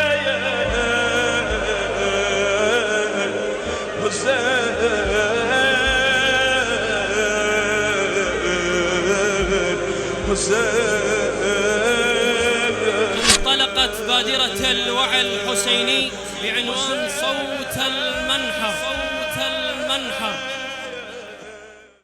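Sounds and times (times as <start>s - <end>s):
music: 0.0s - 22.0s
person chanting: 13.1s - 21.5s.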